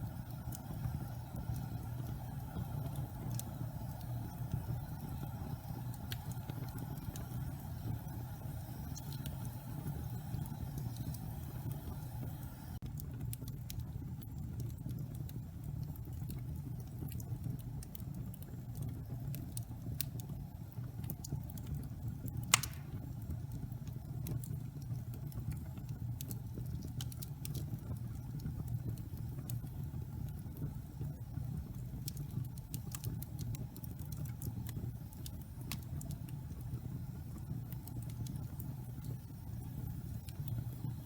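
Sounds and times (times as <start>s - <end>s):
fire crackling: 0.0s - 41.0s
fire rumbling: 0.0s - 41.0s
loud wood pop: 22.5s - 23.0s.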